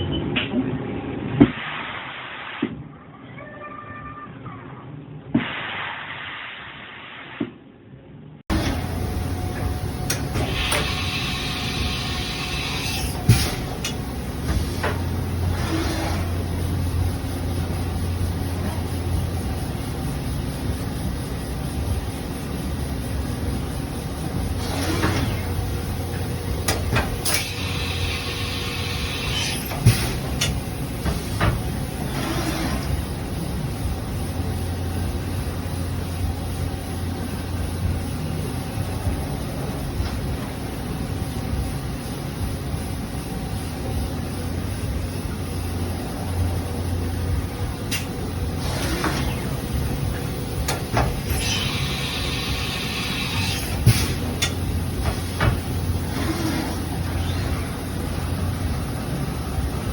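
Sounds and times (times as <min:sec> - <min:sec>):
machine mechanical hum: 0:08.0 - 0:59.9.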